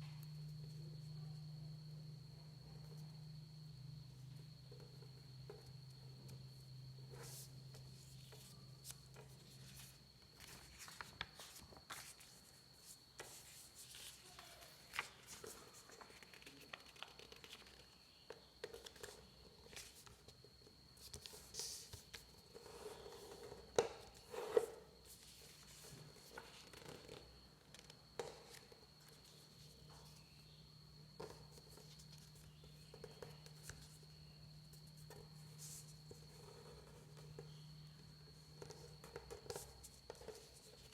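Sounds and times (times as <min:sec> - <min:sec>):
faint high-pitched whine: 0:00.0 - 0:40.9
paper rustling and crinkling: 0:08.3 - 0:17.8.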